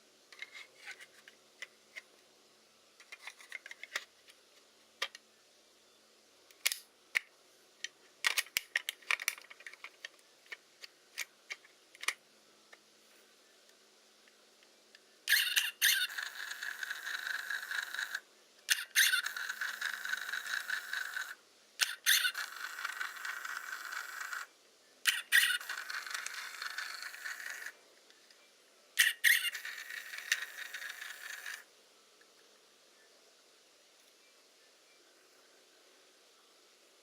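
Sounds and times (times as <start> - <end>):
camera winder squeaking whir: 15.3 - 16.1.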